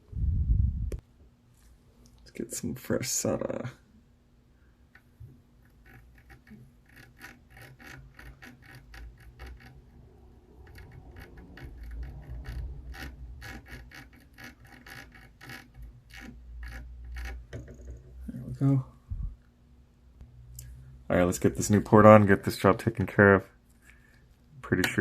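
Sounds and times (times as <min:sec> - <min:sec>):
low rumble: 0:00.0 - 0:01.0, 0:19.0 - 0:19.4
soldering tools clicking and scratching: 0:05.7 - 0:09.9.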